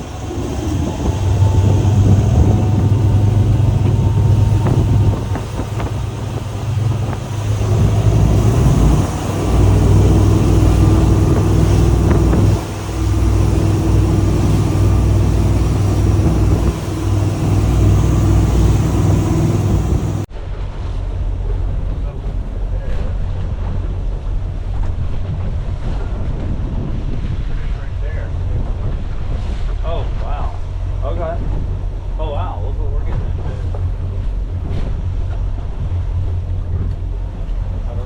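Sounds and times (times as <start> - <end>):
boat engine running: 0.0 - 20.3, 28.3 - 38.0
water against hull: 0.0 - 38.0
wind: 0.0 - 38.0.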